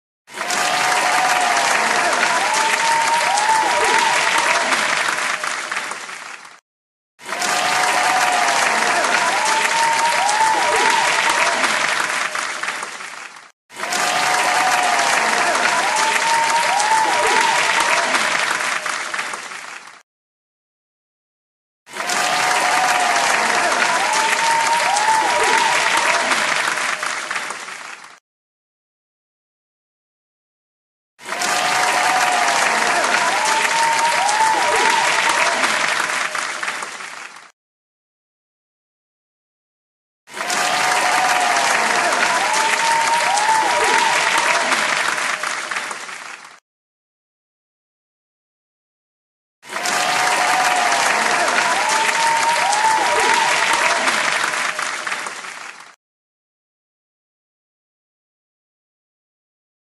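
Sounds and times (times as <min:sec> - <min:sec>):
audience applauding: 0:00.3 - 0:06.6, 0:07.2 - 0:20.0, 0:21.9 - 0:28.2, 0:31.2 - 0:37.6, 0:40.3 - 0:46.6, 0:49.6 - 0:56.0
crowd clapping: 0:00.3 - 0:06.6, 0:07.2 - 0:20.0, 0:21.9 - 0:28.2, 0:31.2 - 0:37.6, 0:40.3 - 0:46.6, 0:49.6 - 0:56.0.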